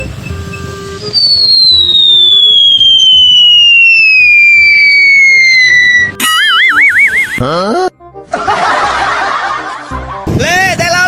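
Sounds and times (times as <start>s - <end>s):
falling whistle: 0.0s - 7.4s.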